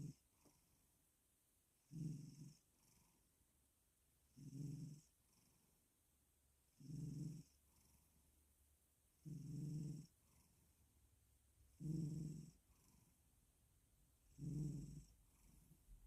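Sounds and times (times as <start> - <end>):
cat snoring: 0.0 - 0.9, 1.8 - 3.3, 4.3 - 5.8, 6.7 - 8.2, 9.2 - 10.8, 11.7 - 13.2, 14.2 - 16.0.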